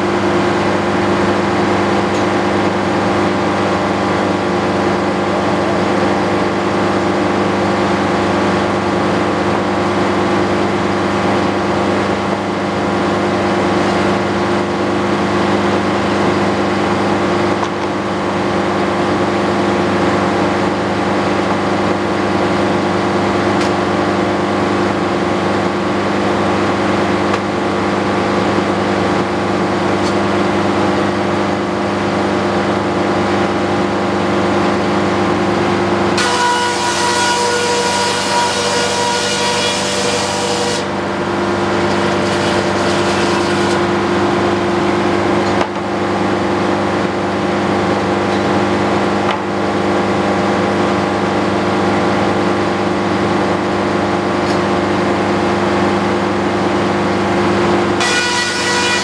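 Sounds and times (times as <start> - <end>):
circular sawmill running: 35.9 - 44.9, 58.0 - 59.0.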